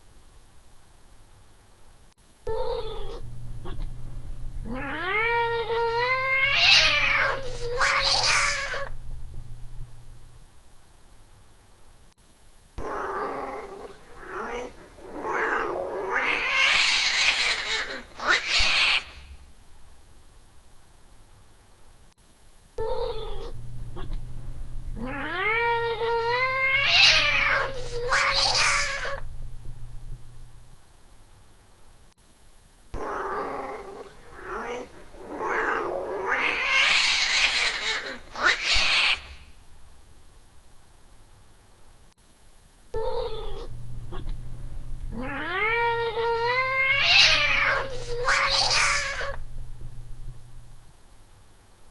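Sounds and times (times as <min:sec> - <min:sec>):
cat yowling: 0:04.7 - 0:08.9, 0:12.8 - 0:19.2, 0:25.0 - 0:29.2, 0:33.0 - 0:39.4, 0:43.0 - 0:44.3, 0:45.1 - 0:49.4
cat hissing: 0:04.7 - 0:09.0, 0:12.8 - 0:19.4, 0:25.0 - 0:29.2, 0:33.0 - 0:39.5, 0:45.1 - 0:49.4.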